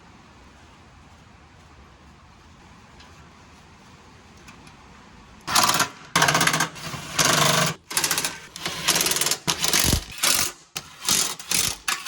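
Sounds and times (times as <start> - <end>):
power tool driving a bolt: 5.5 - 12.0.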